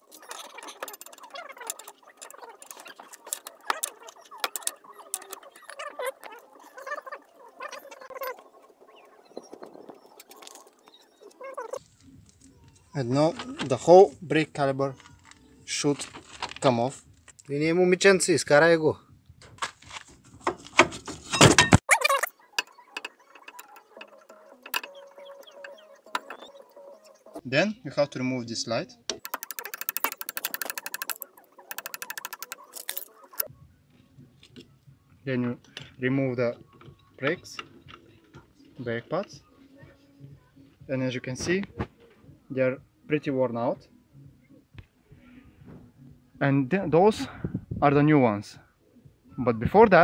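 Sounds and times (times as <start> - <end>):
metallic knocks and scrapes: 0.2 - 5.8, 19.4 - 21.9
wrench clicking on metal bolts: 0.3 - 5.5, 29.2 - 33.5.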